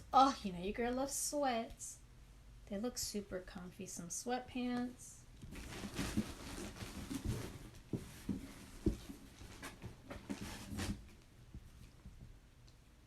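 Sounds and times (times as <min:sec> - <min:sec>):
clothing and packaging rustling: 0:05.3 - 0:12.2.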